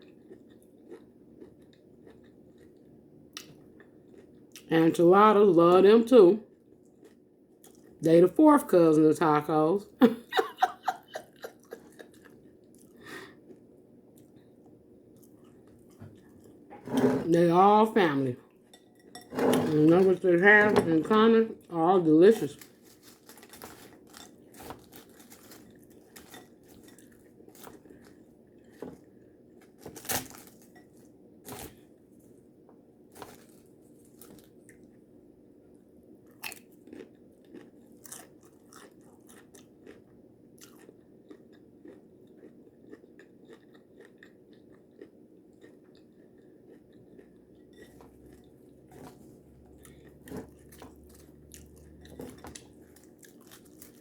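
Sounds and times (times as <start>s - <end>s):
person chewing crunchy food: 0.0s - 4.7s, 6.5s - 8.0s, 11.0s - 17.0s, 22.6s - 32.3s, 36.2s - 54.0s.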